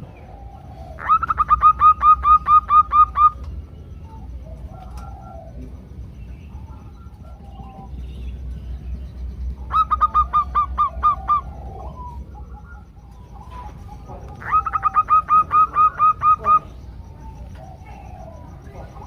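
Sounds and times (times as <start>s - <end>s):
doves calling: 0.0s - 19.0s.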